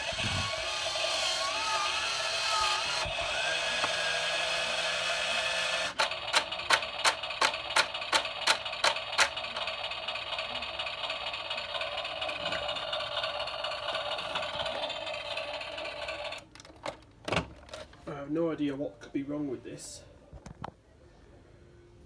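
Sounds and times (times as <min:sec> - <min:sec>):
toy car clicks: 0:05.9 - 0:13.6.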